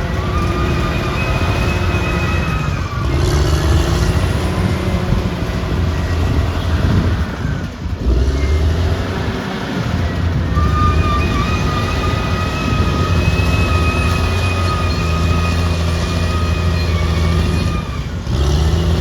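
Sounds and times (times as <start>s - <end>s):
bulldozer diesel engine: 0.0s - 19.0s
high-pitched whine: 10.3s - 18.1s.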